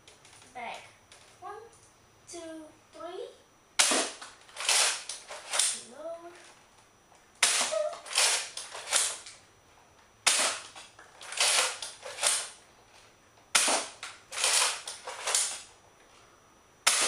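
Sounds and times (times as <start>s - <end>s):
dart blaster firing snap: 3.8s - 5.8s, 7.4s - 9.3s, 10.2s - 12.6s, 13.5s - 15.6s.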